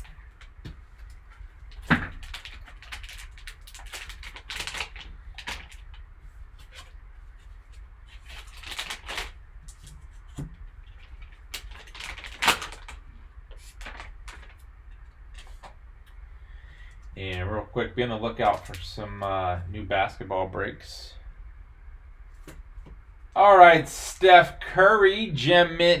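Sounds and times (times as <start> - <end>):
packaging rustling and clicking: 1.7 - 7.0, 7.7 - 15.8.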